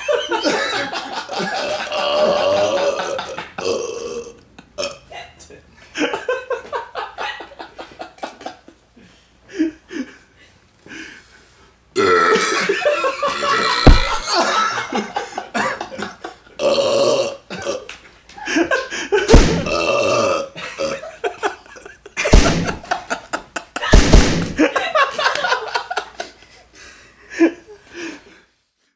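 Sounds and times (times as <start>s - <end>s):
men belching: 1.5s - 5.0s, 12.0s - 14.4s, 16.6s - 17.9s, 19.6s - 21.1s
sharp thumps: 13.8s - 14.2s, 19.3s - 19.8s, 22.3s - 22.9s, 23.9s - 24.7s.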